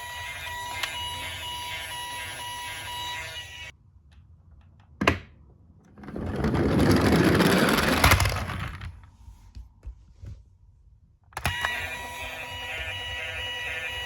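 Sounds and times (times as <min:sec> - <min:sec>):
toy siren: 0:00.0 - 0:03.7, 0:11.4 - 0:14.0
plastic wheels rolling on hard surface: 0:05.8 - 0:09.1.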